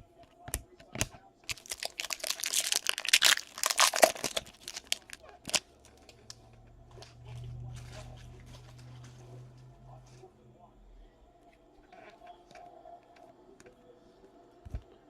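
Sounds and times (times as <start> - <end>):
faint low hum: 0.0 - 15.0
foil wrapper tearing and crinkling: 1.0 - 6.3.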